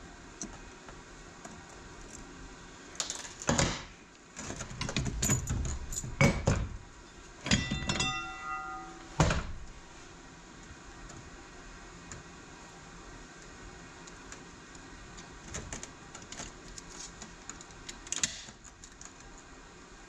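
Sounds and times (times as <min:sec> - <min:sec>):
steel parts clanking: 0:07.1 - 0:09.6
metal part ringing: 0:07.4 - 0:09.2.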